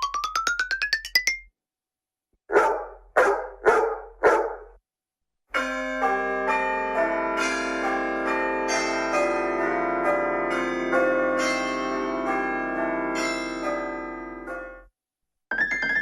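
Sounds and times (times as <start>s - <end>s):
dog barking: 2.5s - 4.8s.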